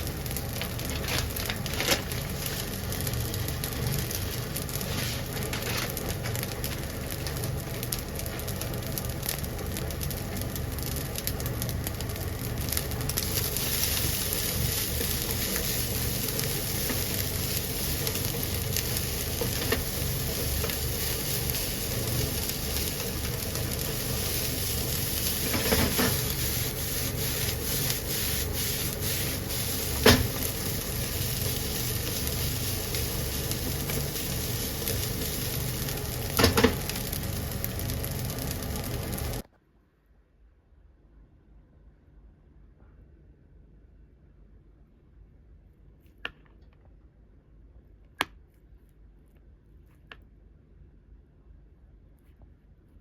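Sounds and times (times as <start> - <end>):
rice sizzling in oil: 0.0 - 39.5.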